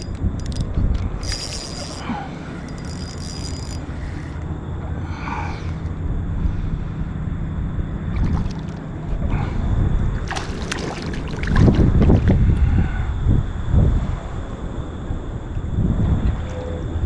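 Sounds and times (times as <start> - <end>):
wind buffeting microphone: 0.0 - 4.4, 6.0 - 17.0
water splashing against kayak: 10.2 - 12.4.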